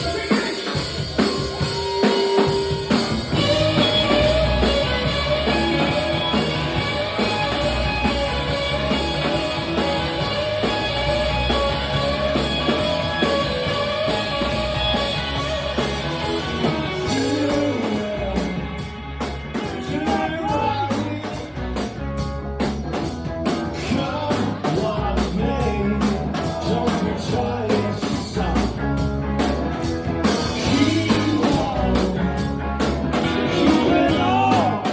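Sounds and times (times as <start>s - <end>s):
drum kit: 0.0s - 34.9s
guitar: 0.0s - 34.9s
person singing: 16.7s - 19.0s, 19.6s - 21.6s, 30.6s - 32.6s, 33.4s - 34.9s.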